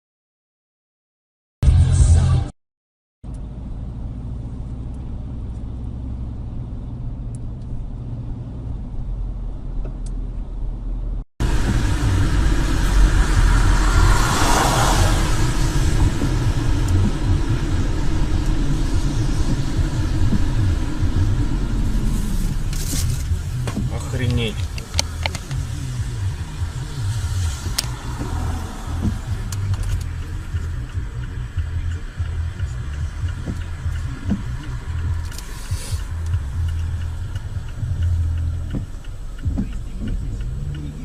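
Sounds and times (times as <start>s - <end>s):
vehicle engine rumble and road noise: 3.2s - 41.0s
hiss: 11.5s - 20.7s, 35.3s - 36.2s.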